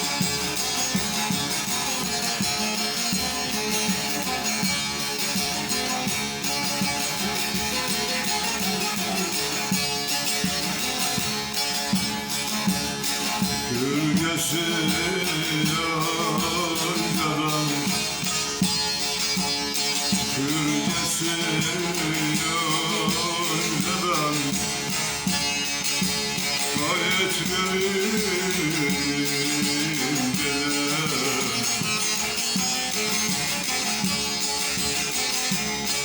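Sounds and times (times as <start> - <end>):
plucked string instruments: 0.0 - 36.0
person singing: 7.2 - 10.0, 13.5 - 18.6, 20.2 - 25.5, 26.5 - 32.6.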